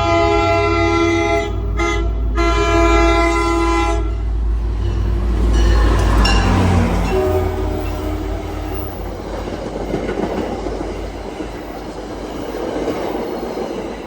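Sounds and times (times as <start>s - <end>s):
train horn blast: 0.0s - 9.0s
train wheels rumbling: 0.0s - 14.0s.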